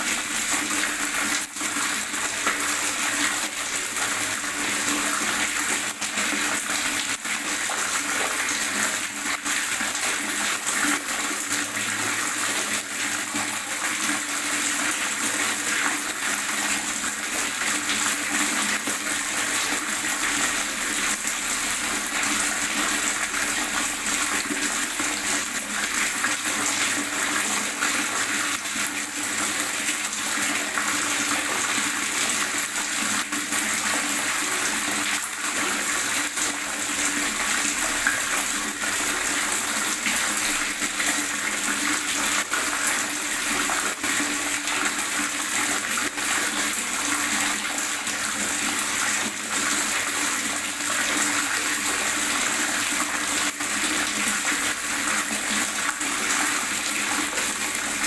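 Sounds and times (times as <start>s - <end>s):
water gurgling and splashing: 0.0s - 58.0s.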